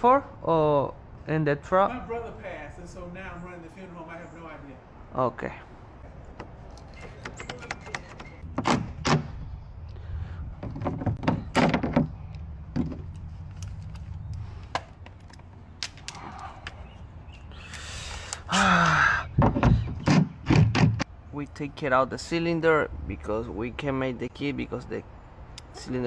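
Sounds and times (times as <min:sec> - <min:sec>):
loud thunks: 0:06.0 - 0:09.4, 0:10.6 - 0:13.1, 0:19.3 - 0:21.1
tools clicking on car door lock: 0:06.4 - 0:09.2.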